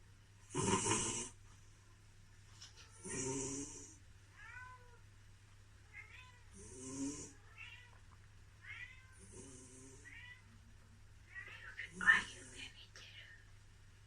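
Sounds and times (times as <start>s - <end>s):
cat snoring: 0.5s - 1.4s, 3.0s - 4.0s, 6.5s - 7.4s, 9.2s - 10.1s.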